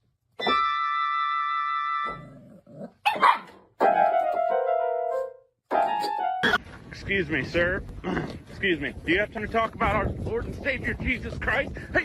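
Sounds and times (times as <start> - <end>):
dog barking: 3.0 - 3.6.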